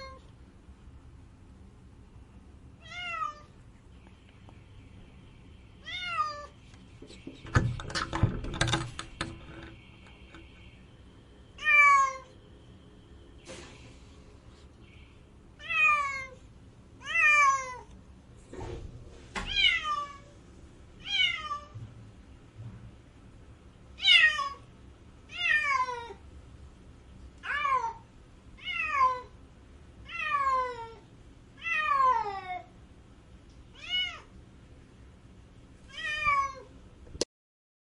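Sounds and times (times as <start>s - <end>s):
cat meowing: 2.8s - 3.5s, 15.6s - 16.4s, 17.0s - 17.9s, 19.5s - 20.3s, 21.0s - 21.8s, 28.6s - 29.3s, 33.8s - 34.3s, 35.9s - 36.7s.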